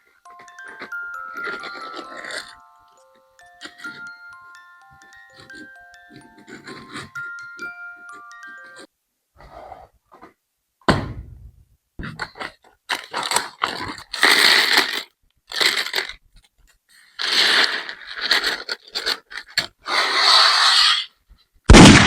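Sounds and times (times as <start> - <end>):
plastic bricks being handled: 0.2 - 4.2, 12.0 - 21.1
plastic pieces clicking together: 12.2 - 16.5, 17.2 - 19.8.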